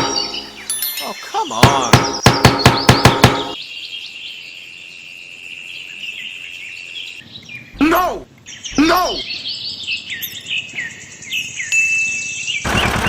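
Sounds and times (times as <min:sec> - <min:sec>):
sharp ringing knocks: 0:00.0 - 0:03.6
birds chirping: 0:00.0 - 0:13.0.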